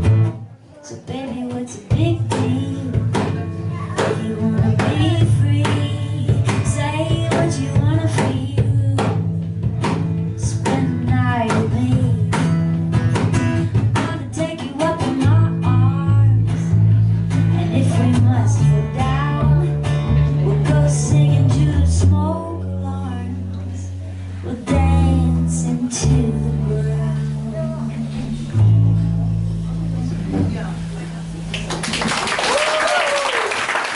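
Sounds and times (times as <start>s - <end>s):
woman singing: 0.7s - 12.9s, 13.6s - 16.7s, 17.3s - 28.7s
acoustic guitar strumming: 1.4s - 31.4s.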